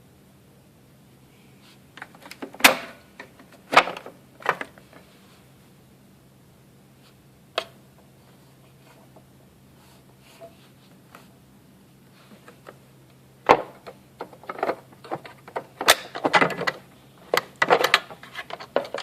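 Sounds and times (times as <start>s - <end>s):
faint steady hum: 0.0s - 19.0s
handling knocks and clunks: 2.0s - 5.0s, 13.4s - 19.0s.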